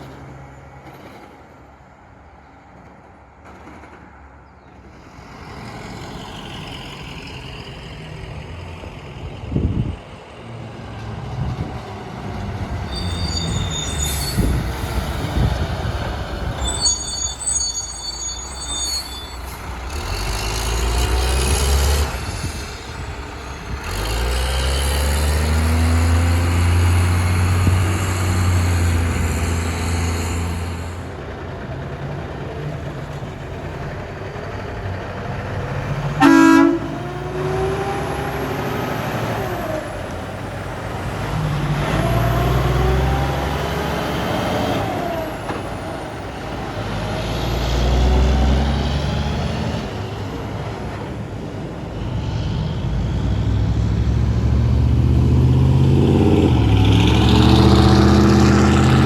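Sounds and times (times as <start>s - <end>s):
trucks passing: 0.0s - 59.0s
truck horn blast: 36.2s - 37.5s.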